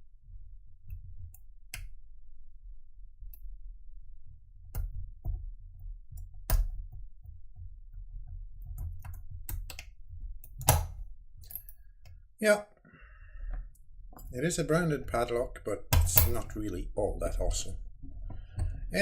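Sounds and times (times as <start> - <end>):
lock pick clicking: 8.6 - 12.2.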